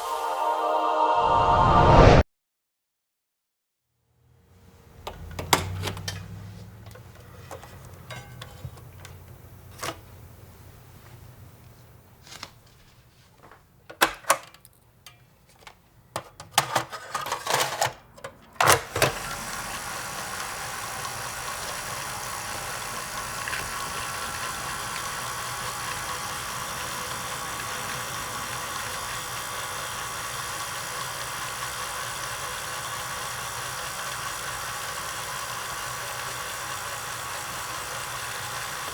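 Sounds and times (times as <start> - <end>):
tape and lid clacks: 5.1 - 10.0, 13.9 - 19.2
rewinding motor whir: 18.6 - 38.9.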